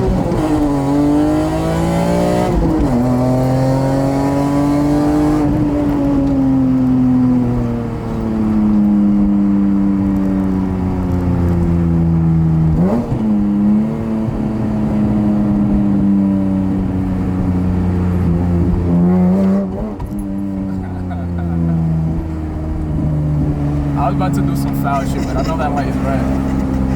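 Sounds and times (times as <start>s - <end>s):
car engine running: 5.4s - 26.9s.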